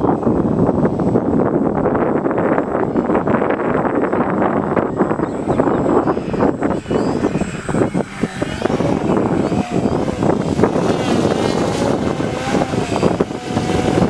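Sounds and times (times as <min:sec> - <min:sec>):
wind buffeting microphone: 0:00.0 - 0:14.0
model plane electric motor whine: 0:02.6 - 0:14.0.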